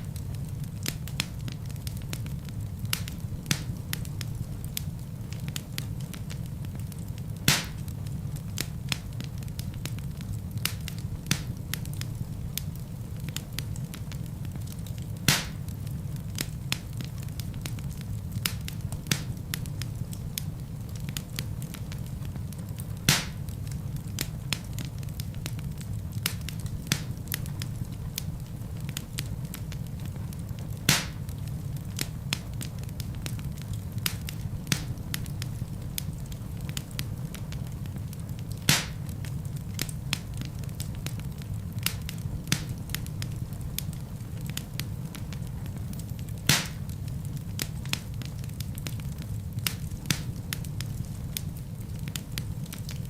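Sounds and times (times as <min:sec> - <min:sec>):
wood fire crackling: 0:00.0 - 0:53.0
sharp fire pop: 0:07.4 - 0:07.9, 0:15.3 - 0:15.7, 0:23.1 - 0:23.5, 0:30.9 - 0:31.2, 0:38.7 - 0:39.1, 0:46.5 - 0:46.9.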